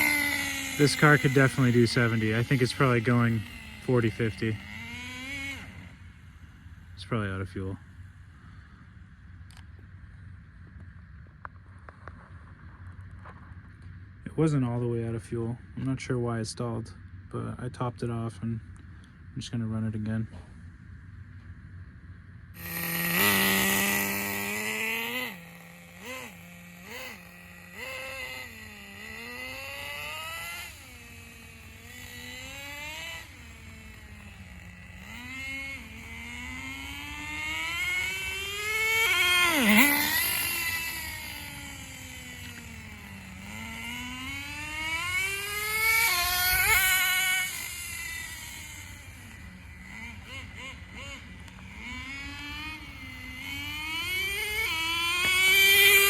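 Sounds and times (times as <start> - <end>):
rc car engine revving: 0.0 - 7.1, 22.6 - 56.0.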